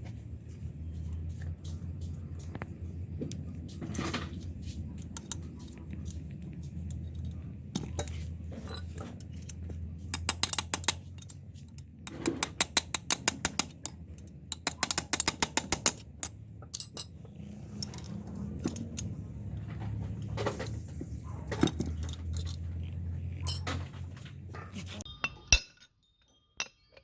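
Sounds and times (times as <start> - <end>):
low steady hum: 16.0 - 27.0.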